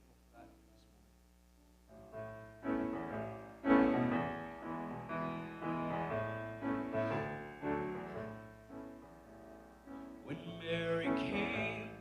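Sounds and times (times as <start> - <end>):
piano chords: 1.9 - 12.0.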